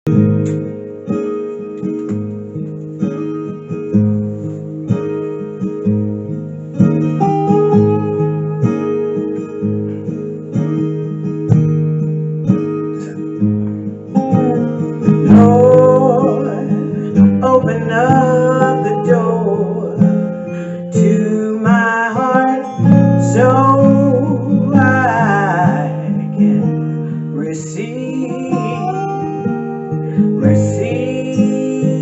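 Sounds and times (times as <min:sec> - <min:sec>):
acoustic guitar strumming: 0:00.0 - 0:32.0
person singing: 0:14.1 - 0:32.0.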